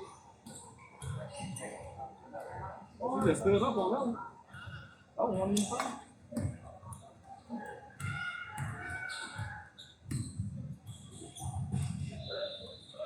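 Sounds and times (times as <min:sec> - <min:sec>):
basketball bouncing on court: 0:08.0 - 0:12.2
shoe squeaks: 0:08.0 - 0:13.0.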